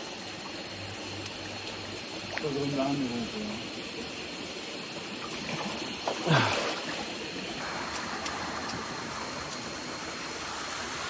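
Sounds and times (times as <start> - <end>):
stream trickling over rocks: 0.0 - 11.0.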